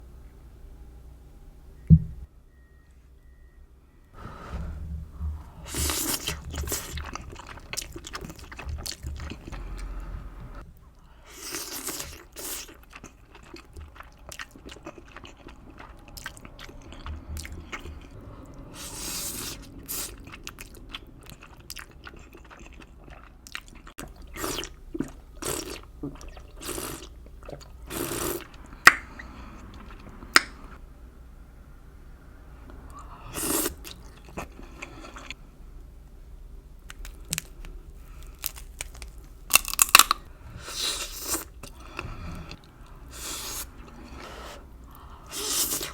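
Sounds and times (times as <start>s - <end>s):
chewing and crunching: 5.7s - 9.9s, 11.4s - 27.8s, 36.9s - 43.0s.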